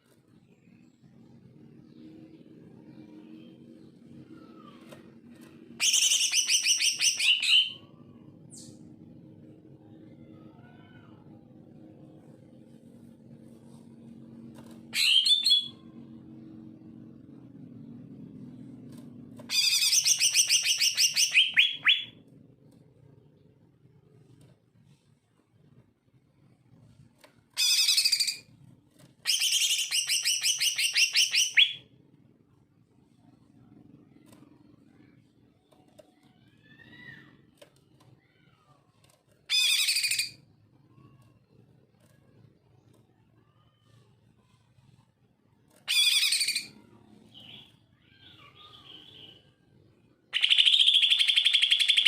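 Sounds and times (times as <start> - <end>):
bird whistling song: 5.8 - 7.8, 15.0 - 15.8, 19.5 - 22.2, 29.3 - 31.8, 50.4 - 52.0
bird singing in chattering bursts: 50.4 - 52.0.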